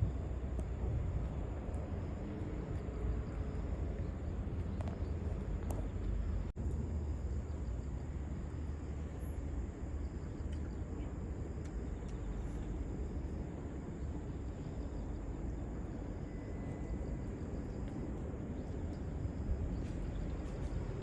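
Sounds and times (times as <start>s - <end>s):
low outdoor rumble: 0.0s - 21.0s
faint ticks: 10.3s - 10.8s, 11.6s - 13.4s.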